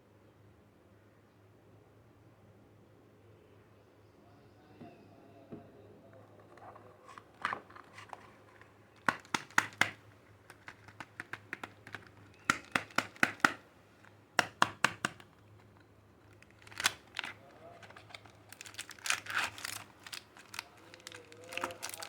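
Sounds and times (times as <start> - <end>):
packaging crinkling: 7.4 - 22.0.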